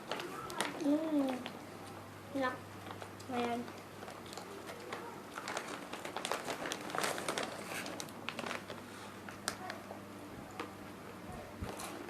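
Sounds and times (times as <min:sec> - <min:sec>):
chewing crunchy snack: 0:03.7 - 0:08.8.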